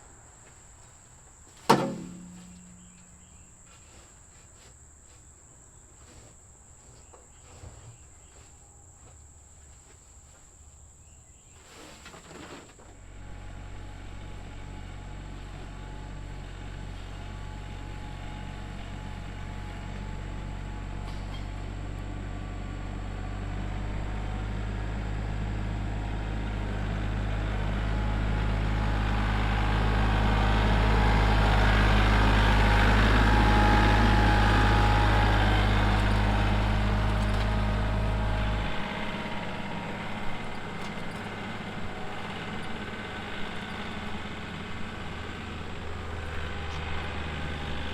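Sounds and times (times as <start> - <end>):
tractor engine humming: 0.0 - 4.7, 11.6 - 47.9
crickets chirping: 0.0 - 12.3.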